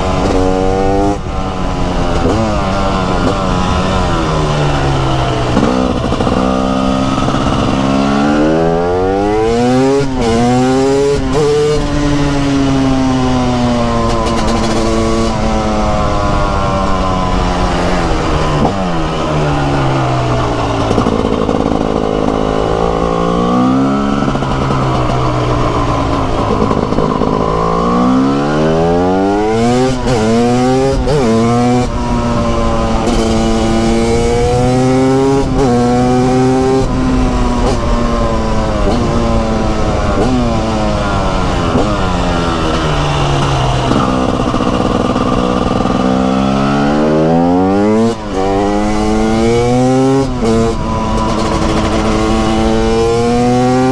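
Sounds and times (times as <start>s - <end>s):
two-stroke motorcycle engine revving: 0.0s - 53.9s.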